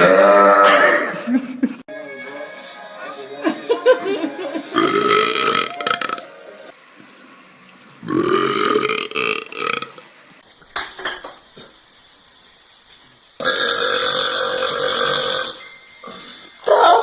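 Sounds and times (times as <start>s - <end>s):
man burping: 0.0s - 1.3s, 4.8s - 6.2s, 8.0s - 10.0s.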